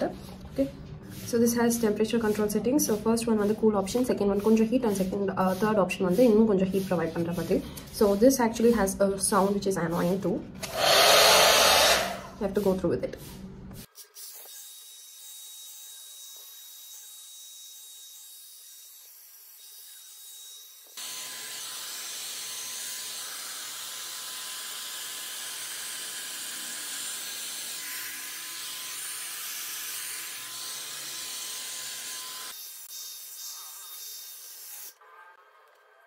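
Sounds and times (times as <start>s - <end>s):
hot-air brush blowing air: 1.1s - 8.2s, 10.0s - 13.4s.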